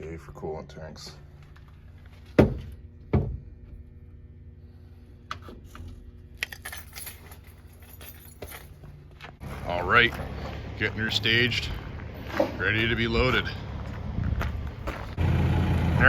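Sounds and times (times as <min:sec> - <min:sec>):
steady low hum: 0:00.0 - 0:16.0
light clinks and rattles: 0:06.4 - 0:08.9.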